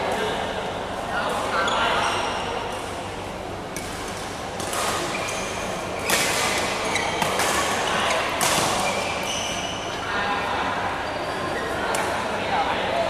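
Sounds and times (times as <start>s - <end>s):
shoes squeaking on court floor: 1.6s - 2.6s, 4.6s - 10.1s.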